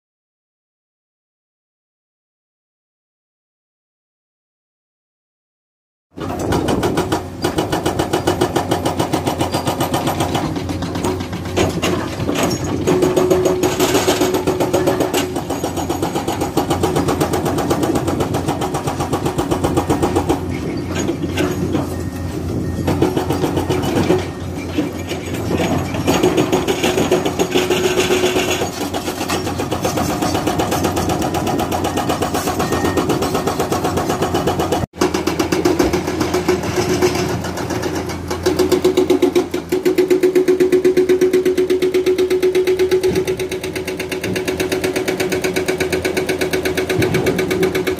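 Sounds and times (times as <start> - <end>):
excavator diesel engine clattering: 6.2 - 47.9.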